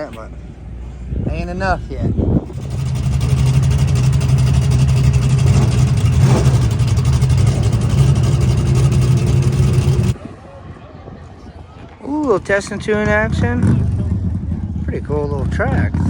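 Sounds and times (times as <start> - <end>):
loud drag car engine: 2.4 - 10.2, 12.7 - 16.0.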